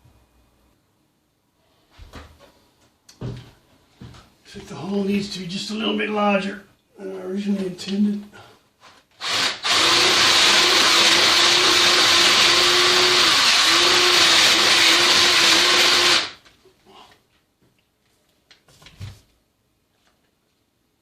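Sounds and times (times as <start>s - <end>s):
small electric drill running: 9.2s - 16.4s.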